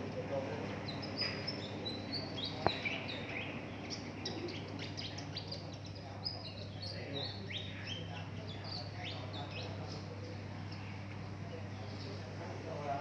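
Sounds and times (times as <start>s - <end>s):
steady low hum: 0.0s - 13.0s
songbird chirping: 0.4s - 12.5s.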